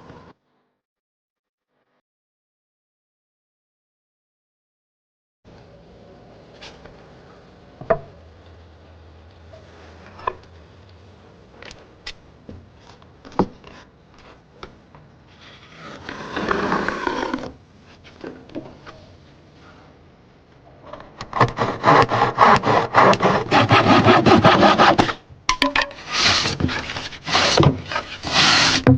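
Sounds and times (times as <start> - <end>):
wood rasping: 21.1 - 25.2, 25.9 - 28.9.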